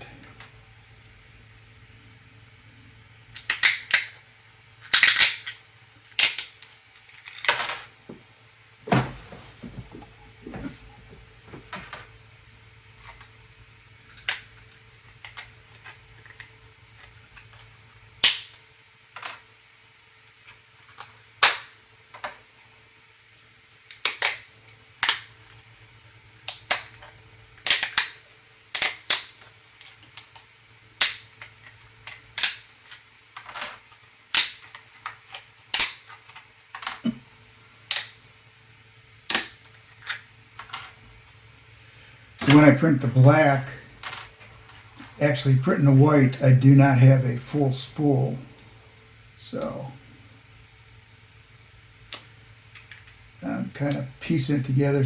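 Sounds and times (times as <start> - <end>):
faint steady hum: 0.0 - 55.0
plastic pieces cracking and snapping: 3.4 - 4.2, 4.8 - 7.6, 15.2 - 18.6, 20.5 - 22.4, 23.9 - 25.4, 26.4 - 37.2, 39.3 - 40.9.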